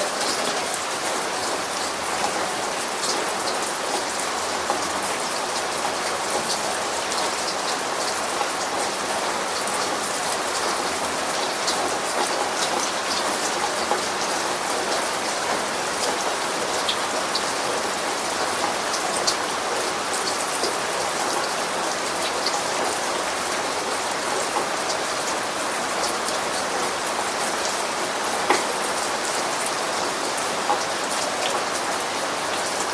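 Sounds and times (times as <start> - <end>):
raindrops ticking on a surface: 0.0 - 32.9
steady rain falling: 0.0 - 32.9.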